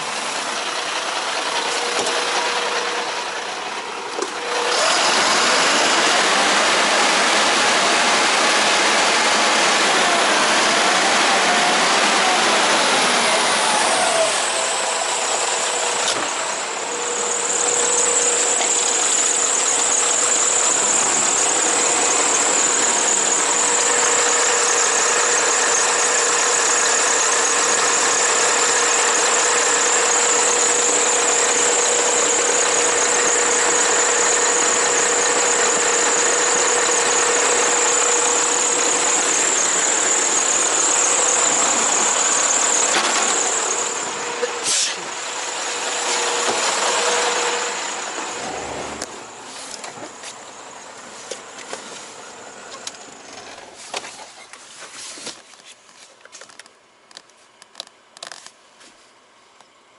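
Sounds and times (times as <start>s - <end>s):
high whine: 0.0s - 53.6s
truck idling: 0.0s - 54.8s.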